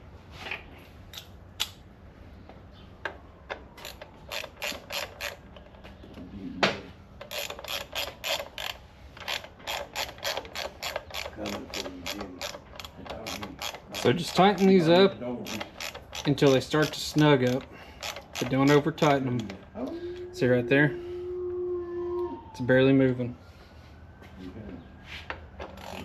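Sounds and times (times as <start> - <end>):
ratchet wrench clicking: 3.8 - 5.4, 7.2 - 19.6, 25.8 - 26.0.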